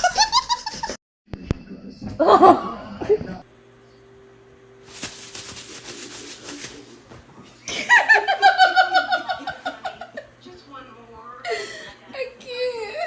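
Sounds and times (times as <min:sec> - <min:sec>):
high-pitched laughter: 0:02.2 - 0:02.9
rustling hiss: 0:04.8 - 0:07.1.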